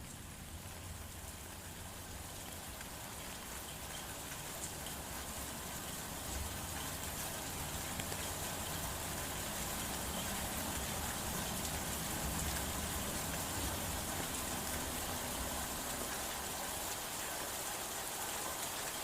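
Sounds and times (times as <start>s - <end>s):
rain drop ticks: 0.0s - 16.3s
heavy rain falling: 0.0s - 19.0s.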